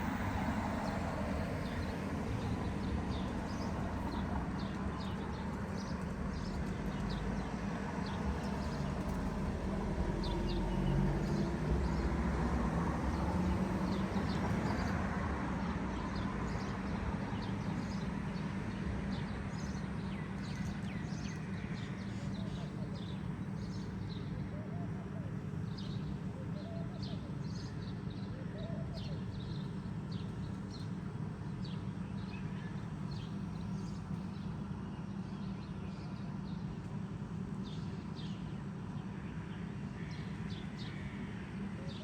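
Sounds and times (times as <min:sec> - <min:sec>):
passing vehicle rumble: 0:00.0 - 0:04.8, 0:08.4 - 0:15.9
traffic rumble: 0:00.0 - 0:34.8.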